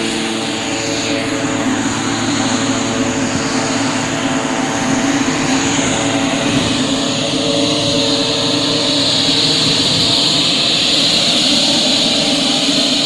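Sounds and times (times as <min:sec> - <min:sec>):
engine droning: 0:00.0 - 0:13.0
hiss: 0:07.8 - 0:13.0.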